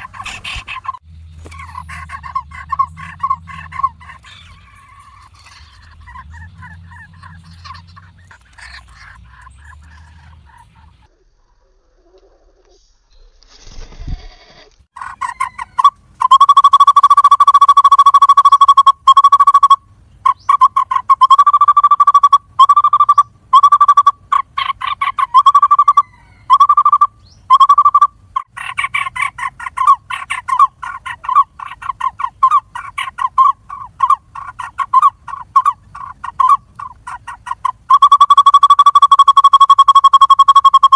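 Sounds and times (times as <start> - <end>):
nestlings begging calls: 0.0 - 11.1, 28.4 - 38.2.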